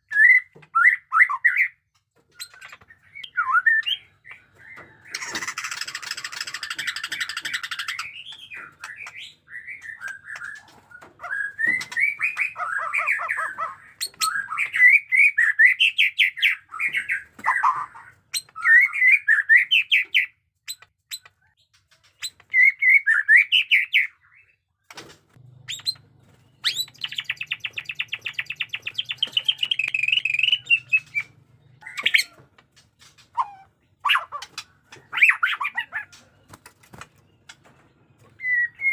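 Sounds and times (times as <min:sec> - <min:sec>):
bird singing whistled phrases: 0:38.4 - 0:38.9.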